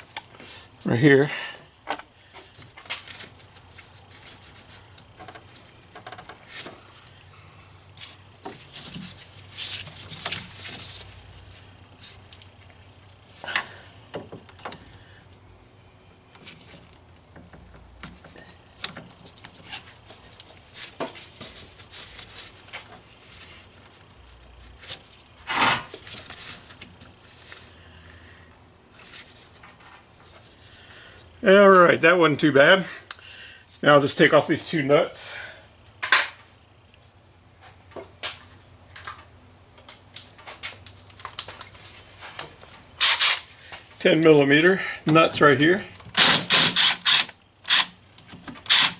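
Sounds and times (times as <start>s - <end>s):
hand tool clicking on metal: 43.0s - 43.5s, 46.2s - 48.9s.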